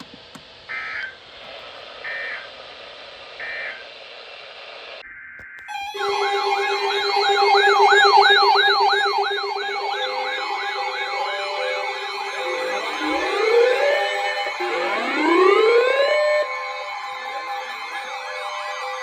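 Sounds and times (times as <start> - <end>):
radio static hiss: 0.0 - 6.5
warbling alert tone: 5.7 - 16.6
screechy digital tone bursts: 5.7 - 18.0.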